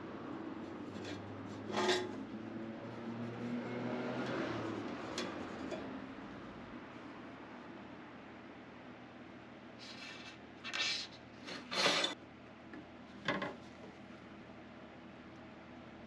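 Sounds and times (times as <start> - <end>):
scraping strokes: 0.8 - 2.2, 9.8 - 12.2.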